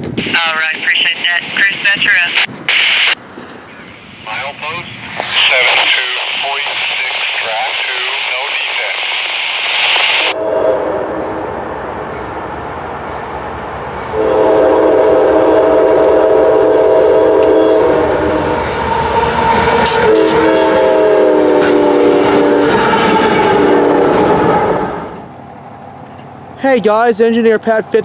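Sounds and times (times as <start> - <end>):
rumble of passing train: 0.0 - 28.0
locomotive air horn blasts: 10.3 - 11.5, 14.1 - 25.0.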